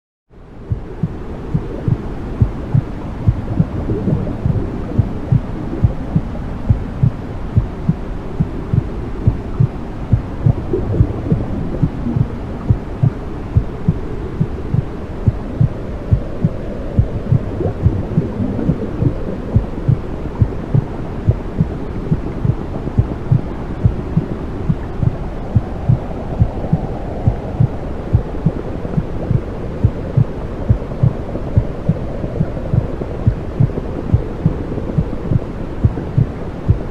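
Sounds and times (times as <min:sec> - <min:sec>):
muffled fluid whooshing: 0:00.6 - 0:36.9
heartbeat thumping: 0:00.7 - 0:36.9.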